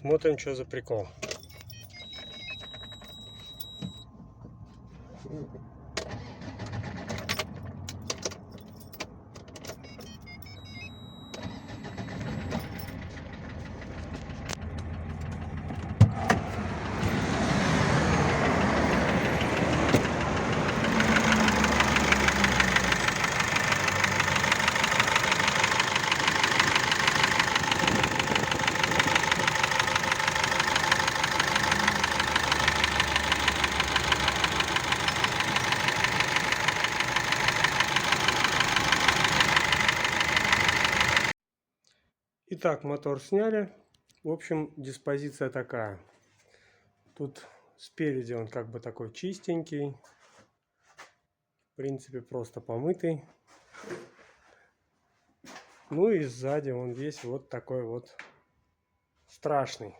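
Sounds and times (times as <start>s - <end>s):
diesel engine starting: 5.0s - 41.4s
rhythmic engine knock: 19.6s - 41.3s.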